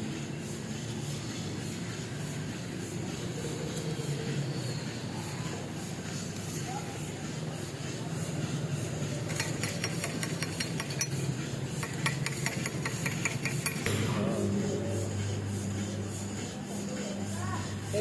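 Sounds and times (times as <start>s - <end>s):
electrical hum: 0.0s - 18.0s
steady low hum: 0.0s - 18.0s
metallic taps and clinks: 9.3s - 14.0s.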